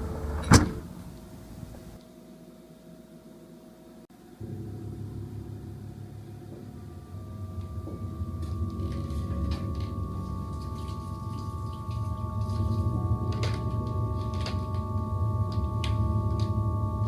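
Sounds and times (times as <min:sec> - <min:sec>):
low rumbling drone: 0:00.0 - 0:02.0, 0:04.2 - 0:17.0
sustained high tones: 0:04.4 - 0:17.0.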